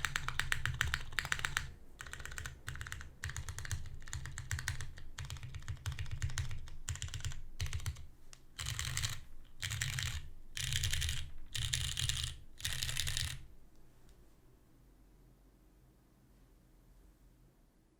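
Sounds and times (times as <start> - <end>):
typing on mechanical keyboard: 0.0 - 13.4.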